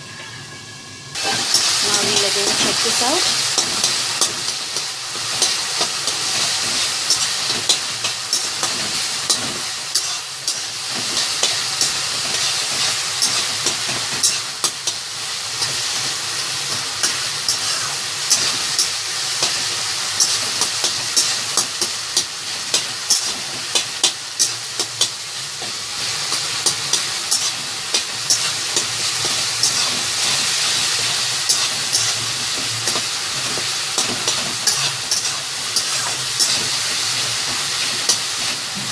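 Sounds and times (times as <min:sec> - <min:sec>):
gravy sizzling in a pan: 0:00.0 - 0:38.9
spoon scraping a pan: 0:26.2 - 0:38.6.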